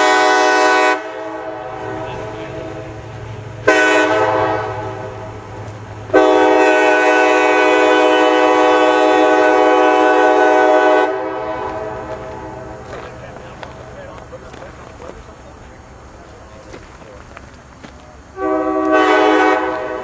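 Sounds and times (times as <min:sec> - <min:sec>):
locomotive air horn chord: 0:00.0 - 0:12.8, 0:18.4 - 0:20.0.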